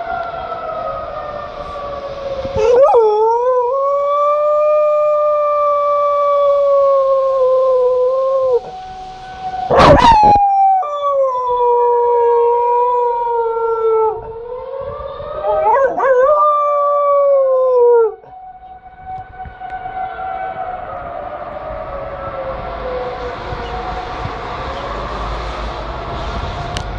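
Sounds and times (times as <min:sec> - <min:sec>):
civil defence siren: 0:00.0 - 0:26.9
dog howling: 0:02.5 - 0:08.8, 0:09.7 - 0:18.8.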